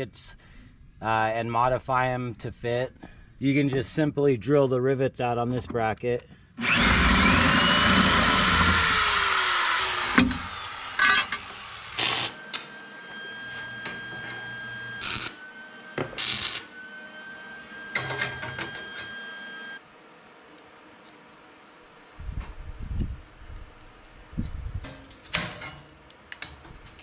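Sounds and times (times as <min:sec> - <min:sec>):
power drill drilling metal: 0:06.6 - 0:19.8.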